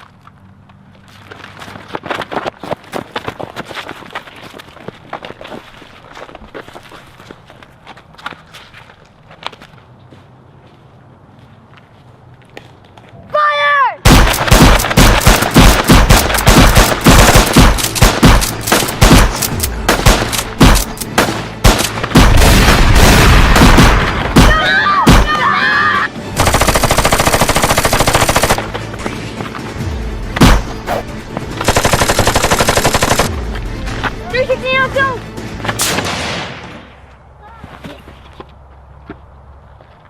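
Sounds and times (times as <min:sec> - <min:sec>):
person yelling: 0:13.3 - 0:14.0, 0:24.4 - 0:26.1
automatic gunfire: 0:14.1 - 0:22.6, 0:26.4 - 0:28.6, 0:31.6 - 0:33.3.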